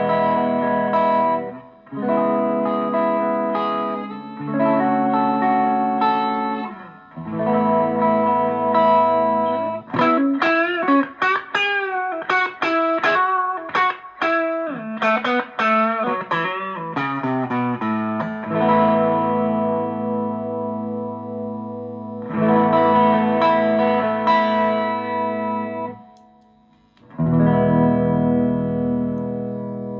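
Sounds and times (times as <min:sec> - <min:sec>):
distorted electric guitar: 0:00.0 - 0:29.9.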